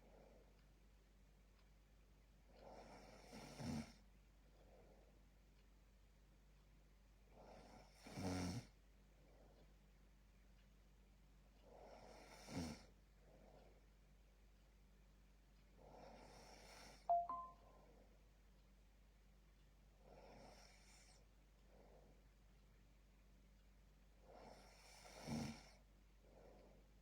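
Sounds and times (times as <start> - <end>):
person snoring faintly: 11.7 - 12.9, 24.2 - 25.8
two-note chime: 17.1 - 17.7.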